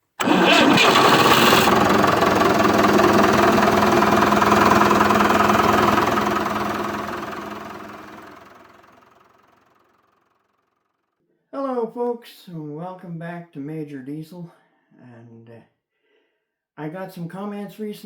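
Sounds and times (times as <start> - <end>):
engine running steadily: 0.2 - 9.0.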